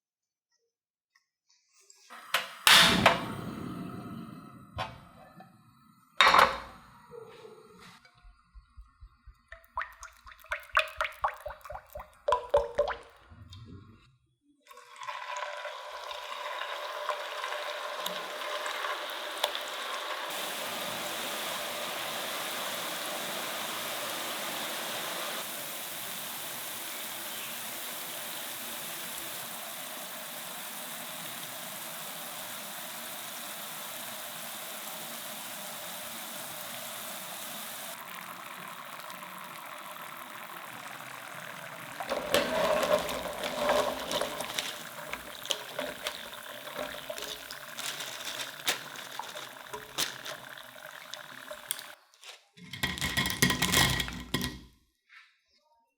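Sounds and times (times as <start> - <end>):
food sizzling in hot oil: 14.8 - 54.5.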